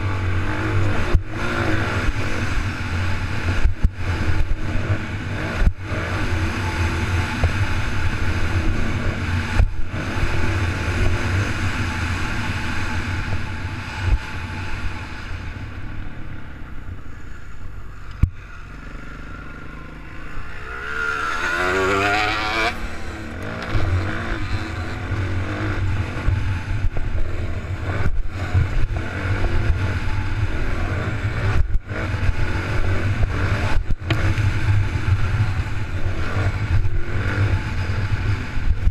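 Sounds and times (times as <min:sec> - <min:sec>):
motocross bike engine revving: 0:00.0 - 0:15.8, 0:18.4 - 0:38.9
wind noise on microphone: 0:21.7 - 0:38.9.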